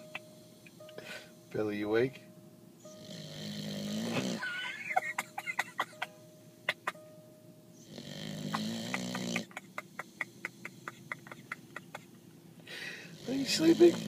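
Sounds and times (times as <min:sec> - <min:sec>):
dog snoring: 0:02.8 - 0:04.4, 0:07.8 - 0:11.1, 0:13.1 - 0:14.0.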